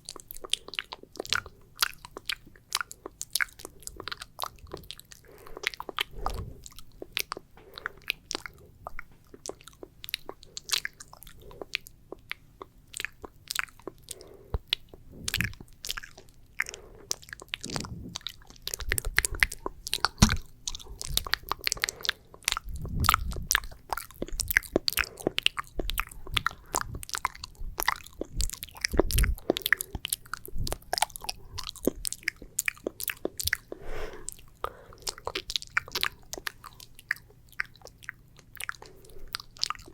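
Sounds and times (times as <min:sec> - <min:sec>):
wet mouth clicks and smacks: 0:00.0 - 0:39.9
soft low thumps: 0:17.6 - 0:21.6, 0:22.6 - 0:24.8, 0:25.8 - 0:29.6.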